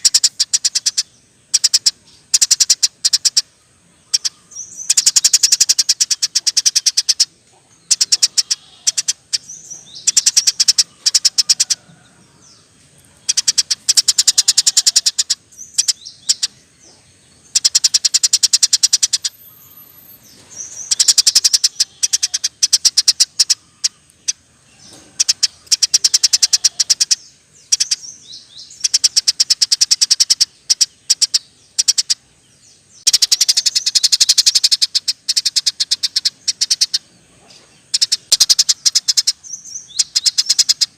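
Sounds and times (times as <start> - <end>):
sparrow chirping rapidly: 0.0 - 40.9.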